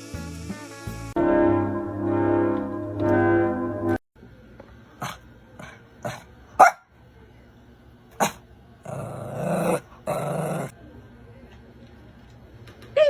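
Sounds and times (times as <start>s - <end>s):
dog growling: 5.0s - 6.7s, 8.2s - 10.7s
dog barking in sharp yaps: 6.1s - 6.9s.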